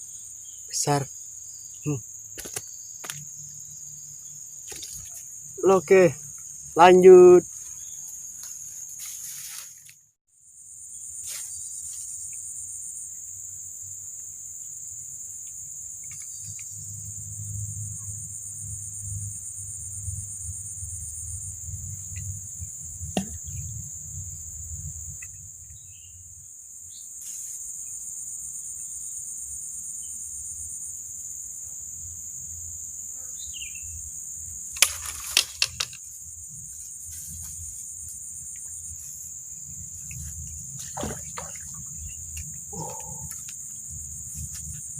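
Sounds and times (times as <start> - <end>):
crickets chirping: 0.0 - 44.9.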